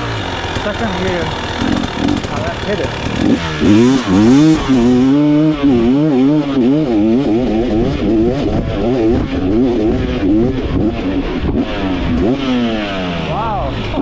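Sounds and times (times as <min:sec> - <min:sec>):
dirt bike engine revving: 0:00.0 - 0:14.0.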